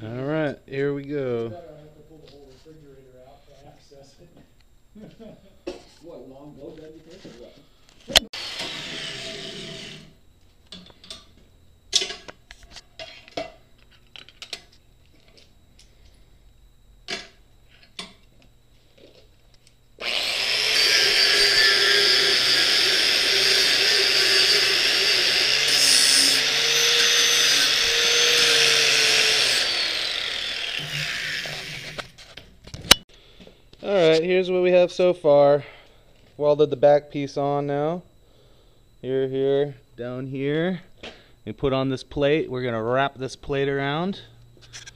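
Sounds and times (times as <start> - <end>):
angle grinder on steel: 8.3 - 10.2, 20.0 - 32.1.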